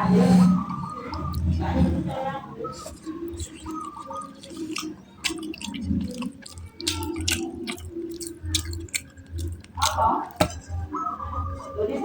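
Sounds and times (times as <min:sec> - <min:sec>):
wet chewing with mouth clicks: 0:00.2 - 0:02.0, 0:02.6 - 0:10.8.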